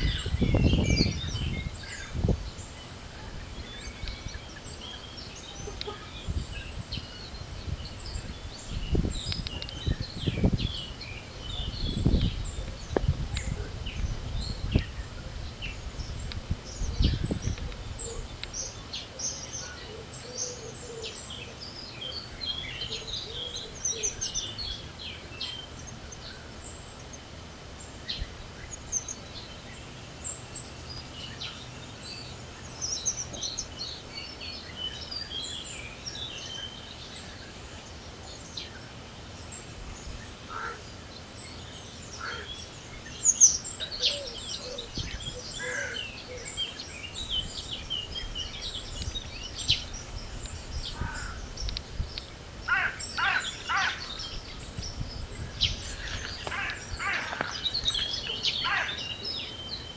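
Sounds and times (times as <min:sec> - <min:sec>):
wind rumbling on microphone: 0:00.0 - 0:19.6, 0:27.8 - 0:30.4, 0:42.1 - 0:59.9
small birds singing and chirping: 0:00.0 - 0:59.9.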